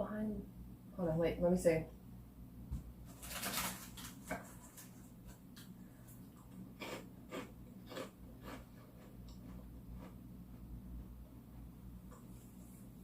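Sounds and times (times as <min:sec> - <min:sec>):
wrapper crinkling: 0:03.1 - 0:05.1.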